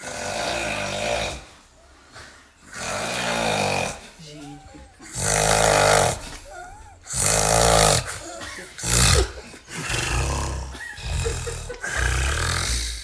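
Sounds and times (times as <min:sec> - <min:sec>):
man snoring loudly: 0:00.0 - 0:01.4, 0:02.7 - 0:04.0, 0:05.0 - 0:06.3, 0:07.1 - 0:13.0.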